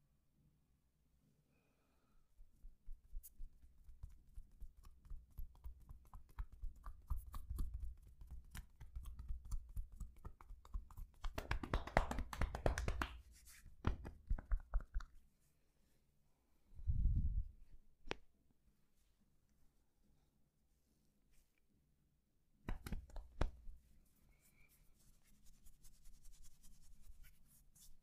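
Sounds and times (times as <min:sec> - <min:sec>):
hands rubbing skin and cloth: 0:02.4 - 0:15.6, 0:22.6 - 0:28.0
quick taps and clicks: 0:04.8 - 0:15.2, 0:22.6 - 0:23.7.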